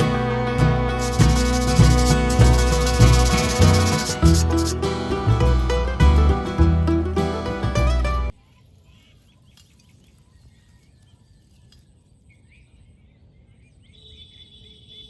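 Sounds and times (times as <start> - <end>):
high-pitched tone: 0.0 - 8.3
faint bird chirps: 8.4 - 15.0.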